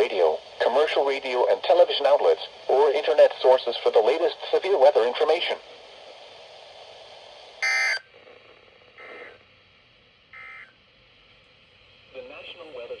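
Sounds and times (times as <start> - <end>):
faint radio hiss: 0.0 - 13.0
digital tone bursts: 7.6 - 8.0.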